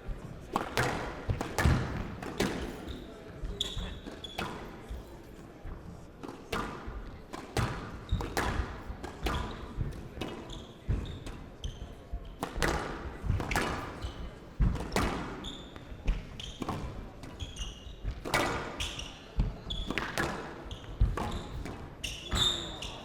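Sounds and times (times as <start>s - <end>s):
squash ball knocks: 0.5s - 2.8s, 6.2s - 11.0s
shoes squeaking on court: 2.6s - 4.9s, 10.3s - 12.0s, 15.3s - 23.0s.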